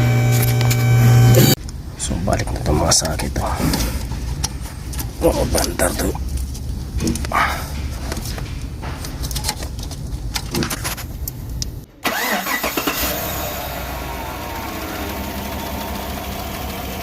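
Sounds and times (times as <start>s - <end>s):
misfiring car engine idling: 4.0s - 17.0s.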